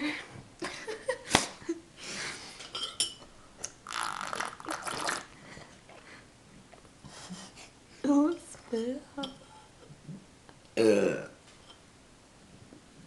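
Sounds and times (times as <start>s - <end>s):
person slurping a drink: 3.8s - 6.0s.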